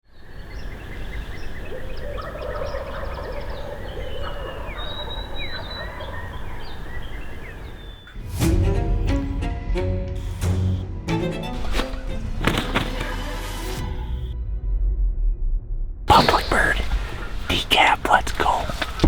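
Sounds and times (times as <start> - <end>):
songbirds chirping and whistling: 0.1 - 8.2, 16.1 - 19.0
turkey gobbling: 1.0 - 8.1.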